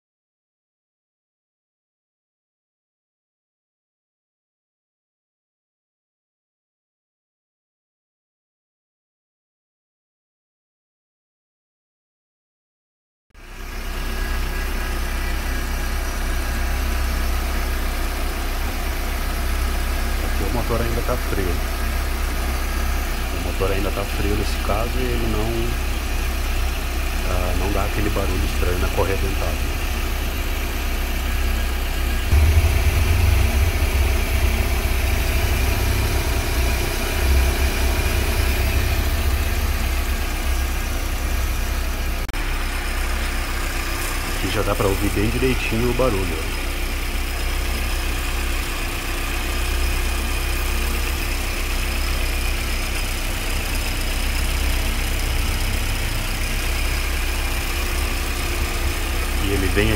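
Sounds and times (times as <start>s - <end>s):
car engine idling: 13.4s - 59.9s.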